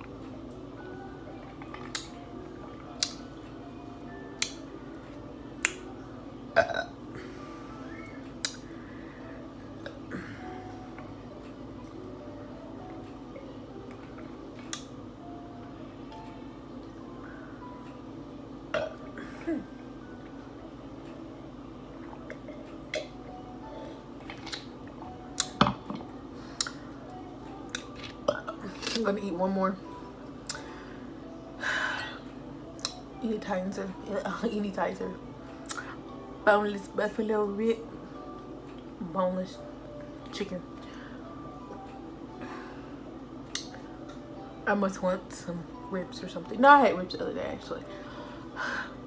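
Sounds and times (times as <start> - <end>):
woman burping: 6.6 - 7.0, 18.7 - 19.8, 28.3 - 28.7.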